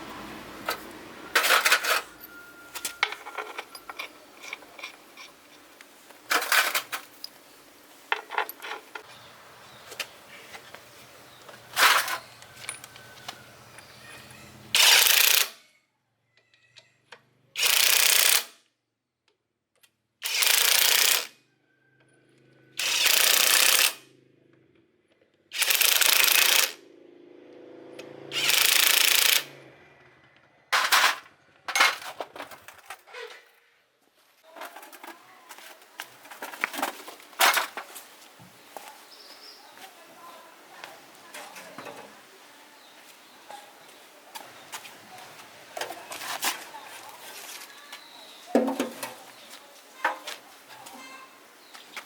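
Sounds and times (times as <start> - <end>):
power tool bursts: 14.8 - 15.5, 17.6 - 18.5, 20.2 - 21.3, 22.8 - 24.0, 25.5 - 26.8, 28.3 - 29.5.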